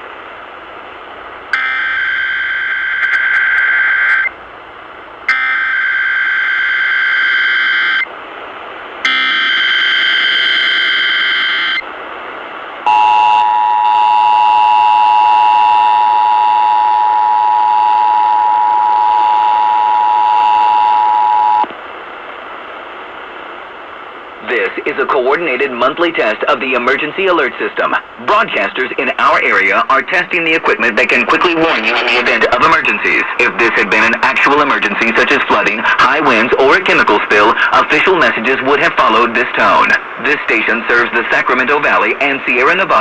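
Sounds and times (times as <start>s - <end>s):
radio static hiss: 0.0s - 43.0s
two-tone attention signal: 9.1s - 11.8s, 12.9s - 21.7s.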